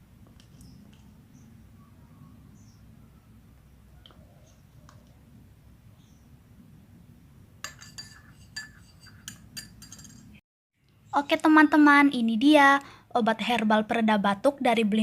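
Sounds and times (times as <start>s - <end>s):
spoon clinking against glass: 7.6s - 10.4s.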